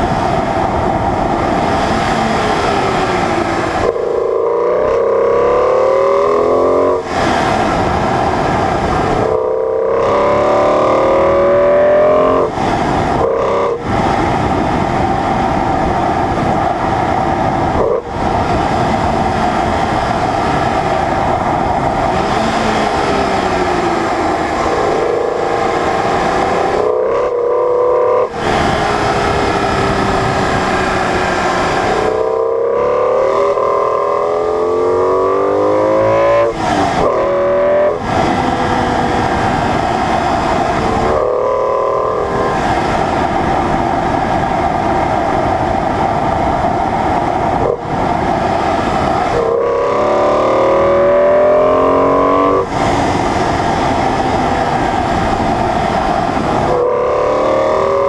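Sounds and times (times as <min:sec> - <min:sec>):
car engine accelerating through gears: 0:00.0 - 0:45.4, 0:47.5 - 0:58.0
wind and road rush: 0:00.0 - 0:58.0.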